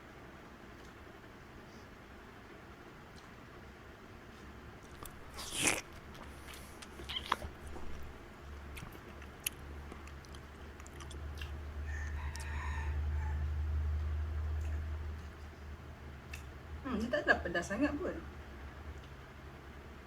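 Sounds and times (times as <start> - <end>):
chewing fried noodles: 3.0 - 12.9.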